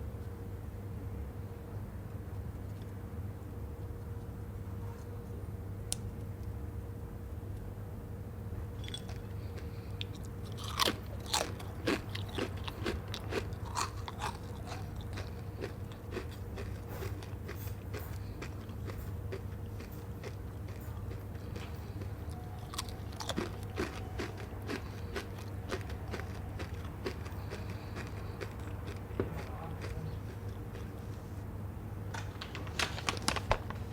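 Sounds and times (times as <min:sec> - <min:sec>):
person crunching a snack: 0:08.8 - 0:31.0.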